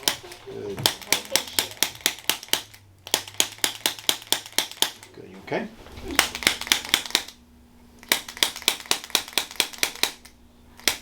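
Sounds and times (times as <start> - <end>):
tapping instrument clicking: 8.0 - 11.0.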